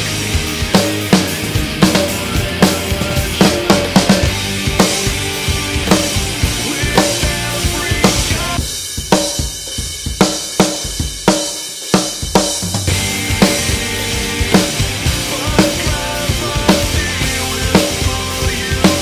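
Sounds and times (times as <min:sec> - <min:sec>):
backing song: 0:00.0 - 0:08.8, 0:12.9 - 0:19.0
drum kit playing a rock beat: 0:00.0 - 0:19.0
loud dry snare drum: 0:00.0 - 0:19.0.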